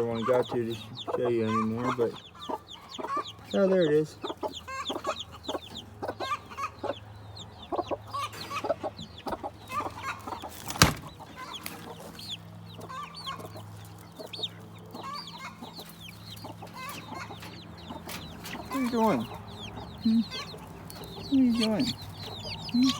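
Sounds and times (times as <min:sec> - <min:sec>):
chickens clucking: 0:00.0 - 0:22.9.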